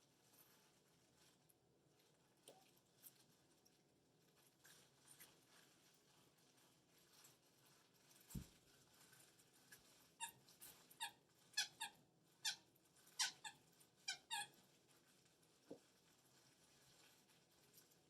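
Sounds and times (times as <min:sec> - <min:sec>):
squeaky dog toy squeaking: 0:11.0 - 0:14.5.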